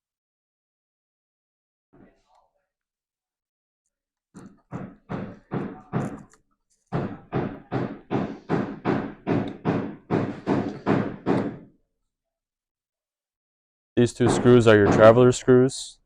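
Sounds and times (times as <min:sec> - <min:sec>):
sharp evenly spaced knocks: 0:04.4 - 0:06.3, 0:06.9 - 0:11.7, 0:14.0 - 0:15.4.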